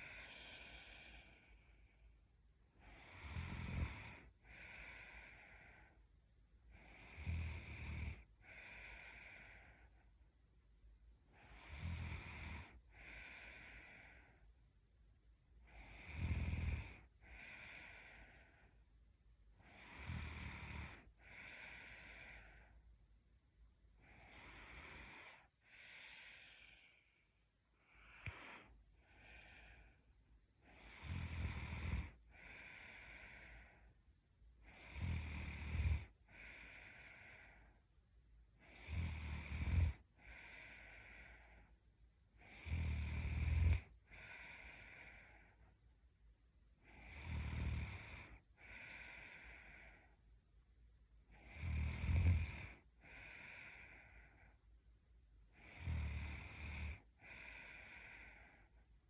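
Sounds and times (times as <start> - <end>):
woman snoring: 0.0 - 1.8, 2.7 - 6.0, 6.7 - 10.0, 11.3 - 14.4, 15.6 - 18.8, 19.6 - 22.8, 24.0 - 33.9, 34.6 - 37.8, 38.6 - 41.8, 42.4 - 45.7, 46.8 - 50.2, 51.3 - 54.6, 55.5 - 58.8
soft breath out: 0.0 - 2.2, 23.9 - 34.8, 36.0 - 37.9, 48.0 - 50.4, 52.4 - 54.8, 56.5 - 59.0.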